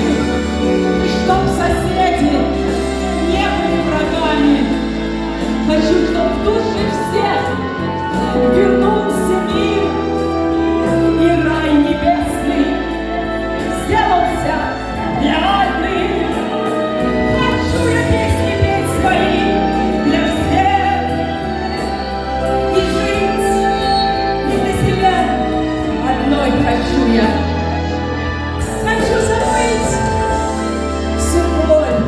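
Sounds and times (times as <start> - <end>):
woman singing pop song: 0.0 - 32.0.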